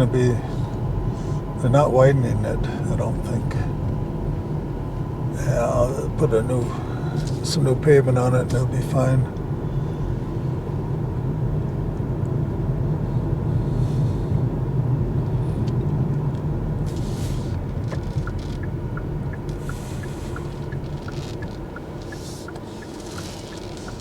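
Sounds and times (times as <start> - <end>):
tyre and road noise: 0.0 - 24.0
faint even ticking: 17.5 - 24.0.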